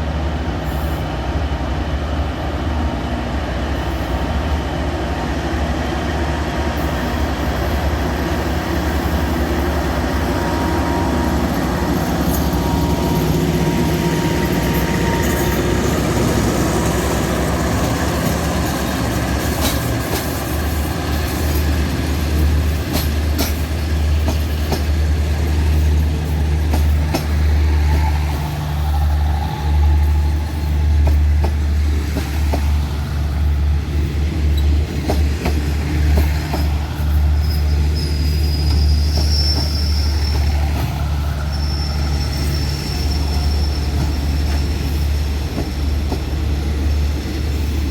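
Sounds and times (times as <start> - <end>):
train running low drone: 0.0 - 47.9
train wheels clicking and knocking: 11.4 - 32.8, 34.3 - 41.2, 42.4 - 47.9.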